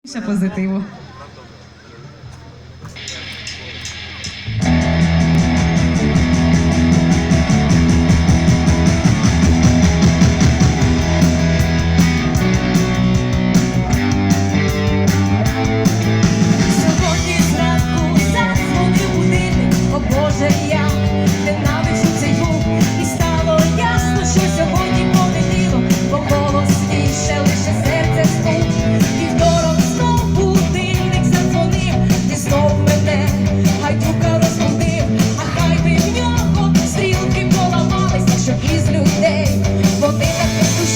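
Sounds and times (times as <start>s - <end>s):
rock band music: 2.6s - 40.9s
person singing: 16.7s - 40.9s.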